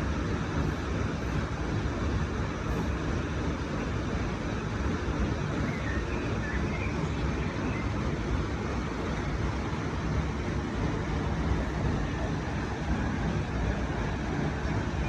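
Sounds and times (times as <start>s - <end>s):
flowing water rushing: 0.0s - 15.0s.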